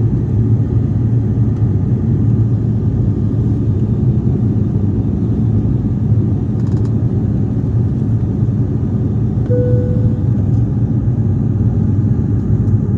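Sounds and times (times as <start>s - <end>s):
aircraft engine rumble in cabin: 0.0s - 12.9s
cabin chime: 9.5s - 10.2s.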